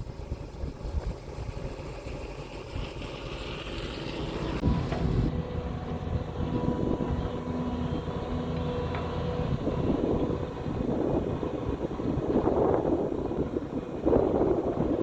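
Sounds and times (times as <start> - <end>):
excavator diesel engine under load: 0.0 - 15.0
steady whine: 4.2 - 15.0.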